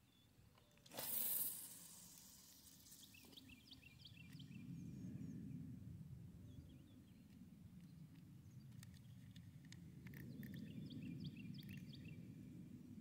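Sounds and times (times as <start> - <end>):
fishing line zipping off reel: 0.8 - 3.5.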